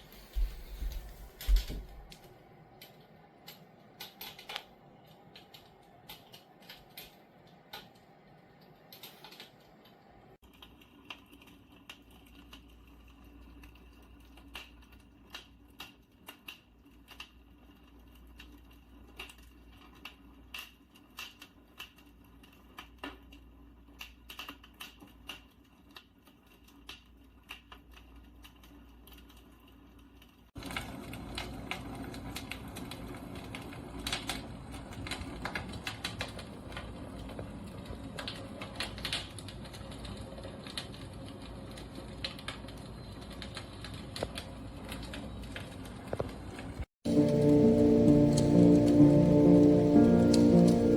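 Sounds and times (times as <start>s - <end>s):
recorded fire crackling: 0.0s - 50.9s
low hum: 47.1s - 50.9s.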